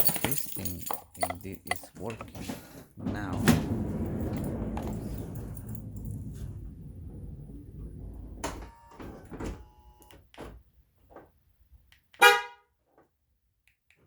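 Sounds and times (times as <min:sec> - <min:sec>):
car horn chirp: 0:12.2 - 0:12.7.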